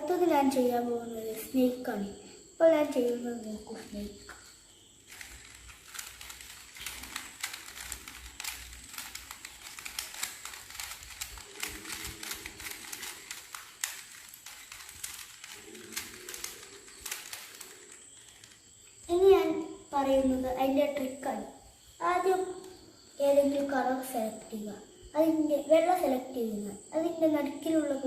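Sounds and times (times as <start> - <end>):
puzzle cube twisting clicks: 5.1 - 18.6.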